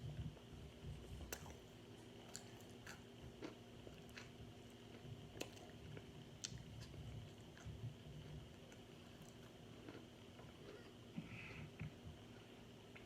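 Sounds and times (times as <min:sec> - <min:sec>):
crisp crunching while chewing: 0:01.2 - 0:07.8.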